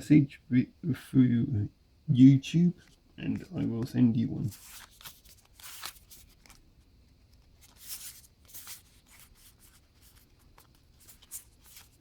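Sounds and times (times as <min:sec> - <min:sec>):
trading cards rustling: 0:03.3 - 0:06.6, 0:07.2 - 0:12.0.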